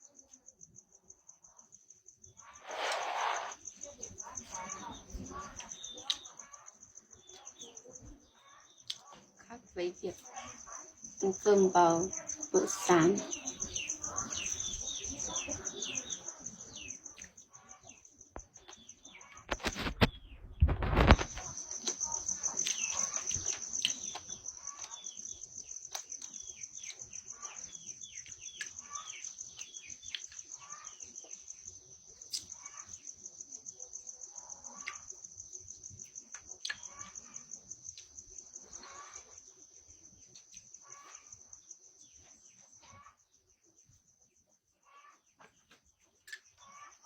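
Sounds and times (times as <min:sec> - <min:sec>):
birds chirping: 0:04.2 - 0:31.4.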